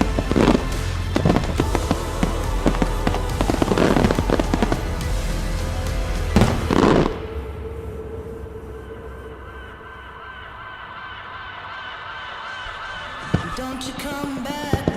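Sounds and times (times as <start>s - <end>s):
music: 0.0s - 10.4s.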